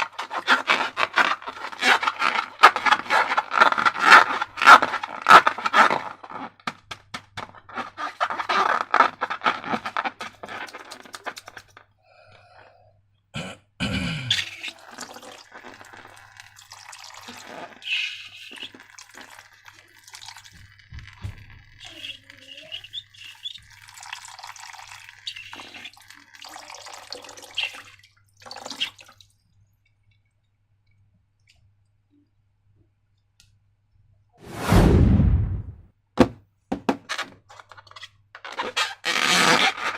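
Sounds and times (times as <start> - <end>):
rubbery squeaks: 0.0 - 6.8, 7.5 - 11.8, 14.3 - 16.4, 17.2 - 19.6, 20.6 - 24.0, 25.1 - 26.1, 37.0 - 39.9
thump: 34.7 - 37.0.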